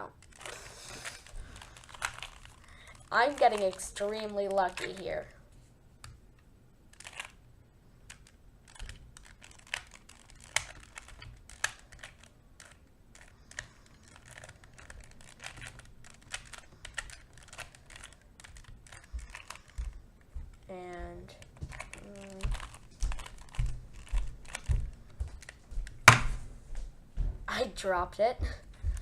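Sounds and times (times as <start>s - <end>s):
plastic puzzle cube clicking: 0.1s - 5.0s, 6.9s - 7.4s, 8.0s - 20.3s, 21.4s - 26.2s.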